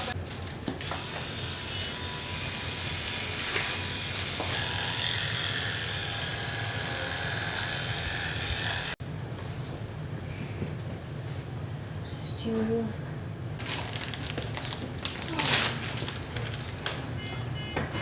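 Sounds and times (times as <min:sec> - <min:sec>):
electric clippers running: 0:00.0 - 0:09.0.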